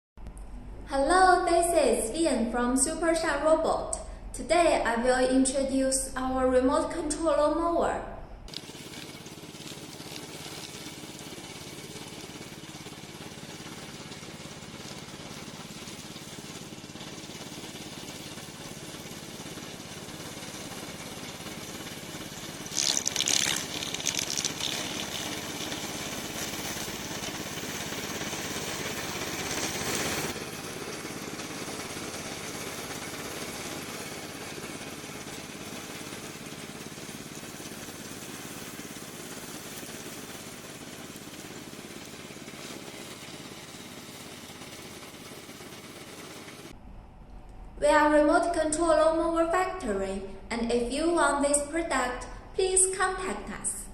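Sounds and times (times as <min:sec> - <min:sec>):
mower engine running: 0:08.5 - 0:46.7
hissing rattling burst: 0:22.4 - 0:30.4.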